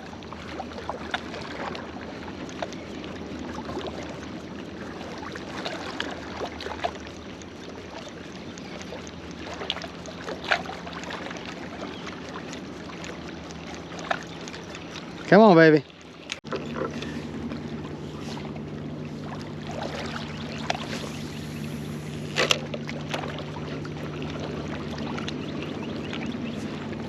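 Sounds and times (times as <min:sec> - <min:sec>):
water lapping against boat hull: 0:00.0 - 0:27.0
faint steady hum: 0:16.2 - 0:27.0.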